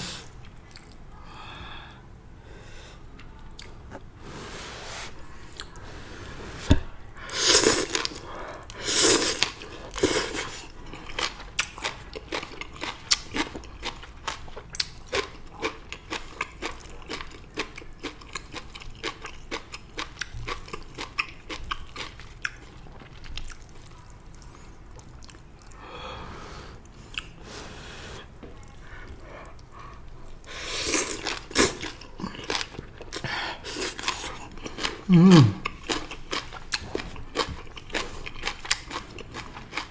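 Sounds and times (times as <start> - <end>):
person chewing crunchy stems: 7.0 - 25.8, 28.6 - 39.9.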